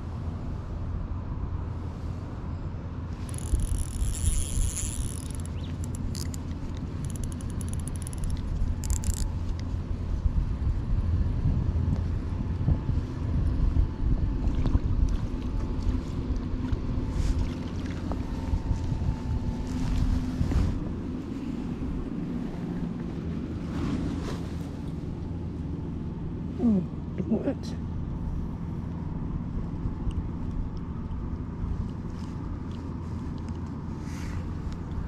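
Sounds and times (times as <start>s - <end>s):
wind buffeting microphone: 3.2s - 23.8s
high-pitched clicking rattling: 3.3s - 9.2s.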